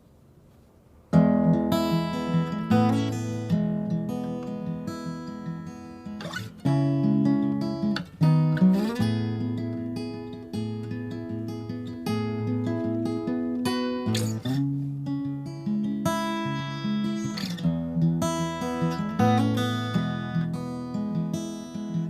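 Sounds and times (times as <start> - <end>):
acoustic guitar strumming chords: 1.1 - 22.0.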